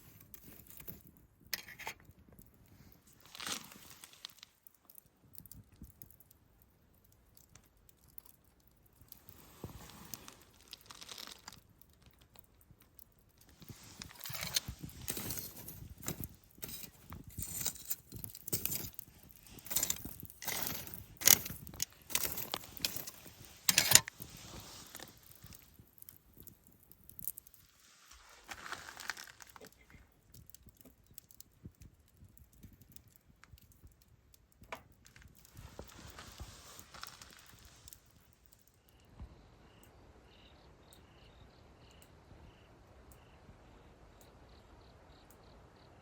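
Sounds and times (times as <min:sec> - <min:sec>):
objects rustling and crinkling: 0:00.0 - 0:06.2, 0:07.4 - 0:31.4, 0:34.6 - 0:39.0
small clinks of objects: 0:13.5 - 0:27.4.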